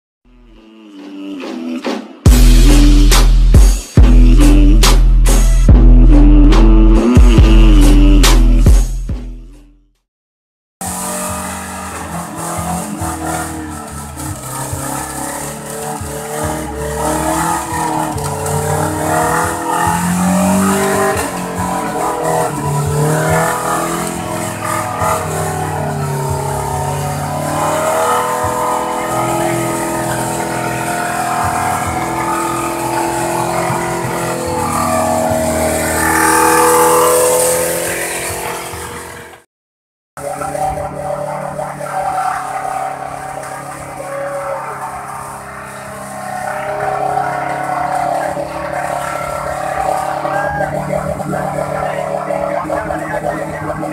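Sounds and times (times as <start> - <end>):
engine revving hard: 10.8 - 39.5, 40.2 - 53.9.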